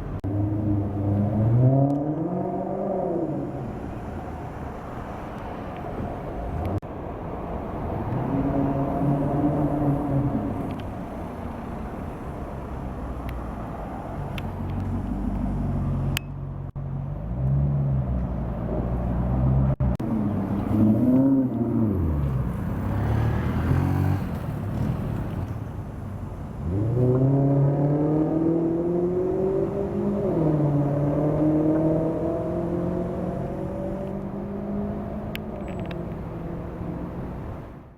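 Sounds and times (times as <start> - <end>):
car engine revving: 7.9 - 16.2, 17.1 - 25.4, 26.6 - 37.2.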